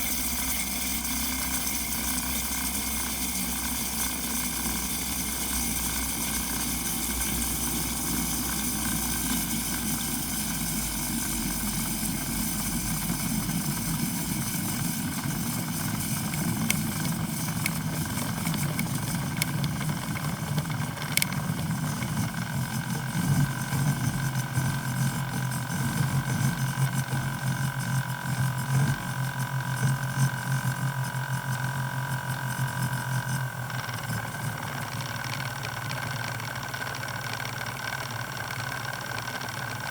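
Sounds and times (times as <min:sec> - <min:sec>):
low buzzing hum: 0:00.0 - 0:39.6.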